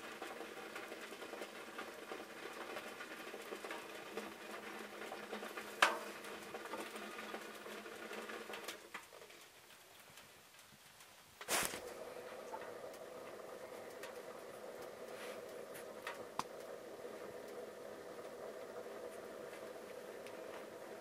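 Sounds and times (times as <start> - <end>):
food sizzling in a pan: 0.0 - 8.9, 11.4 - 17.8.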